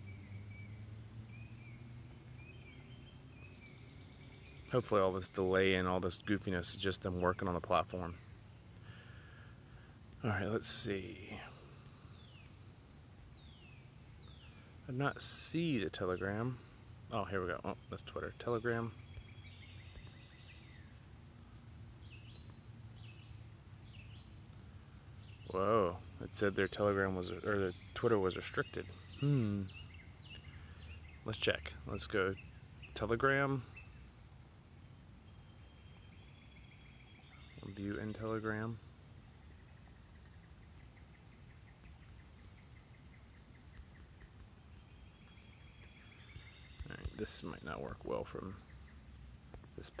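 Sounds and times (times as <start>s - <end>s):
faint high whine: 0.0s - 50.0s
faint chirping tick: 0.1s - 50.0s
faint high chirps: 13.2s - 34.1s.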